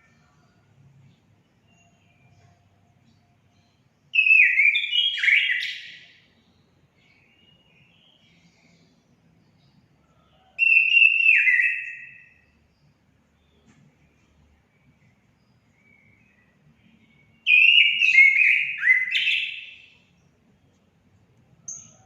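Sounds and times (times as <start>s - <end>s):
thrush singing whistled notes: 3.5s - 8.4s, 10.6s - 12.9s, 14.6s - 20.1s.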